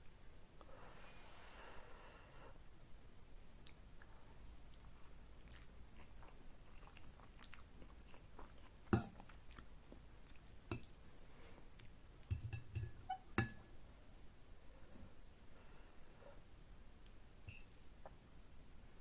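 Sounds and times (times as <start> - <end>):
chewing with wet mouth smacks: 3.4 - 11.0.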